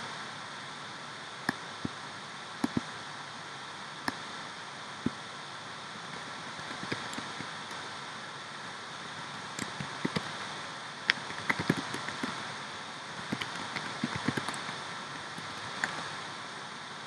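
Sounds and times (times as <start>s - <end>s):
steady background hiss: 0.0s - 17.0s
light computer clicks: 6.6s - 7.8s, 9.4s - 10.5s, 11.1s - 12.5s, 13.2s - 16.1s.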